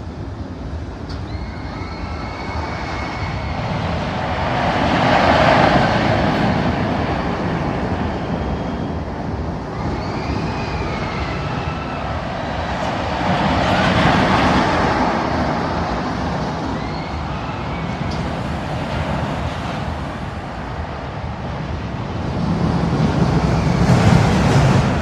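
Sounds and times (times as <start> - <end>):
roller coaster rumbling on track: 0.0 - 25.0
high squeals: 1.2 - 20.8.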